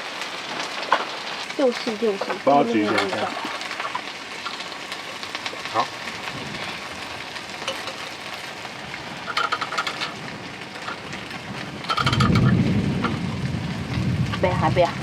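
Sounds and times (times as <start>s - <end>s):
heavy rain on a tent: 0.0s - 15.0s
low rumble: 10.3s - 15.0s.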